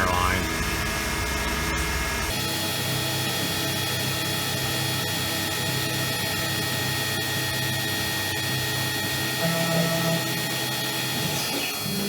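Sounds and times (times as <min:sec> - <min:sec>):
machine hum: 0:00.0 - 0:02.4, 0:08.4 - 0:11.4
high-pitched spindle whine: 0:06.6 - 0:11.4.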